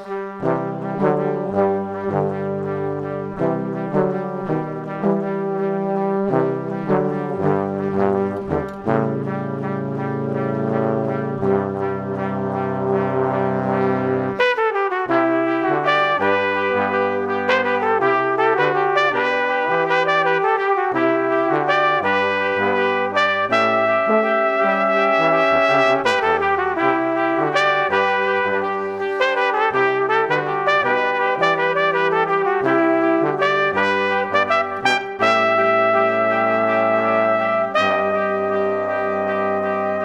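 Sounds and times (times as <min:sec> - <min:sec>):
brass ensemble chords: 0:00.0 - 0:40.0.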